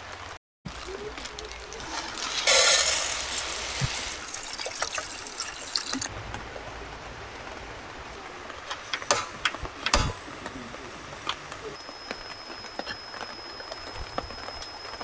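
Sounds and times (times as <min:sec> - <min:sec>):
small water drips: 0:00.0 - 0:02.4, 0:03.4 - 0:06.1
water trickling and splashing: 0:00.0 - 0:06.2.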